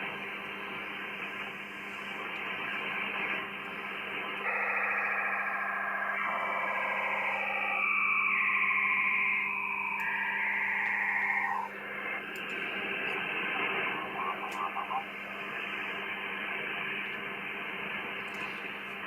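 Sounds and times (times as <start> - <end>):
radio band hiss: 0.0 - 19.0
faint signal burst: 3.8 - 16.6
wavering data transmission tones: 4.0 - 16.2.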